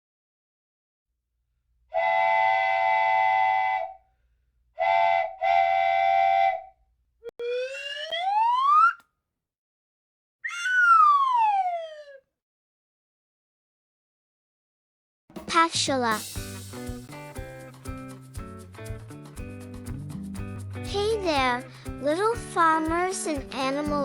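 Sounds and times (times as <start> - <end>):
whistle gliding in pitch: 2.0 - 4.0, 4.8 - 6.7
whistle toots: 4.8 - 6.7.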